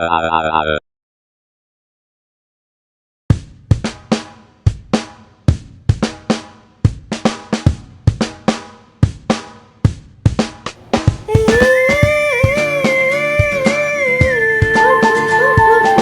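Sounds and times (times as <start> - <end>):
drum beat: 10.8 - 16.0.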